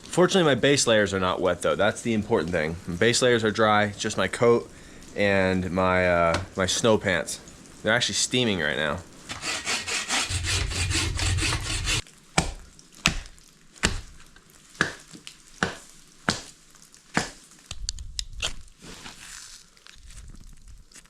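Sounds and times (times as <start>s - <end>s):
hand saw cutting wood: 9.3s - 12.0s.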